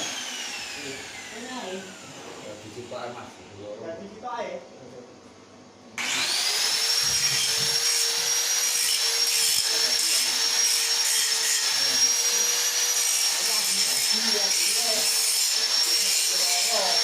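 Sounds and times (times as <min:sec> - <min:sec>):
electric power tool whining: 0:00.0 - 0:02.4, 0:06.0 - 0:17.0.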